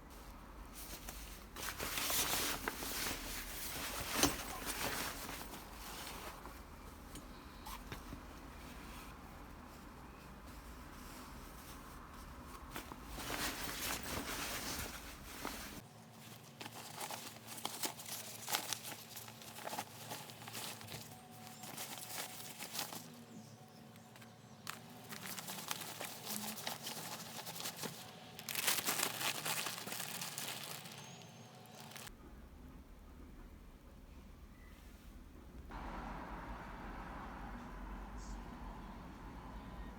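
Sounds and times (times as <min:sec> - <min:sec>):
packaging rustling and crinkling: 0:00.1 - 0:23.4, 0:24.0 - 0:32.1.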